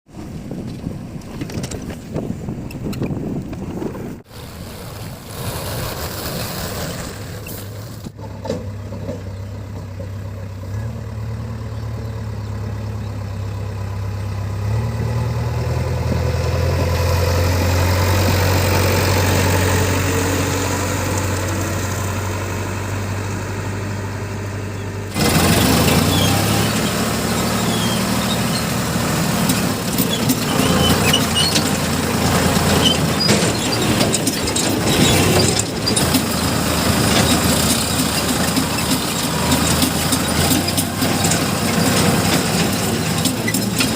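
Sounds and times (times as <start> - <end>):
heavy diesel machinery running: 0.1 - 43.9.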